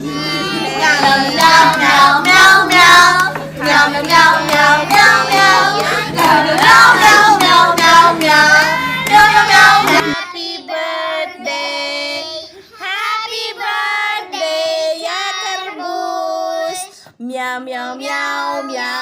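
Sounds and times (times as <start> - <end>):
low hum: 0.0 - 10.2
child singing: 0.0 - 19.0.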